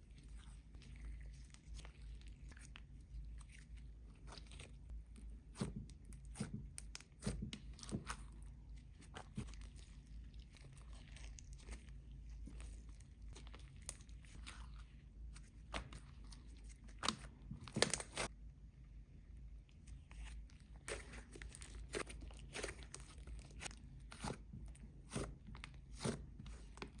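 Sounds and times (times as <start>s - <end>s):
hands squishing slime: 0.0s - 18.3s, 19.8s - 27.0s.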